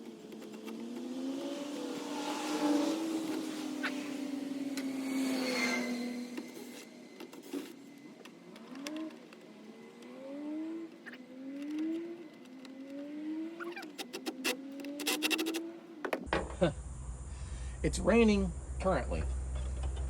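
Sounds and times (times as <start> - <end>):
vehicle engine accelerating: 0.0 - 16.0.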